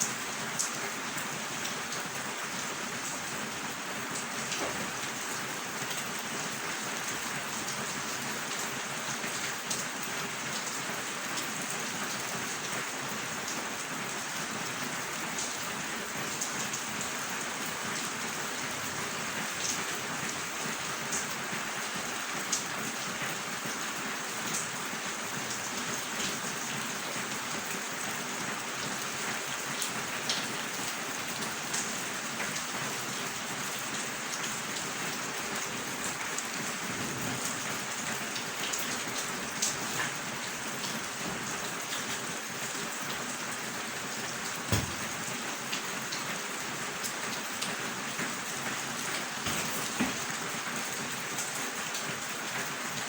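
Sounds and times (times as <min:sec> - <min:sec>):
rain falling: 0:00.0 - 0:53.0
raindrop hits: 0:44.6 - 0:45.6, 0:49.4 - 0:50.4.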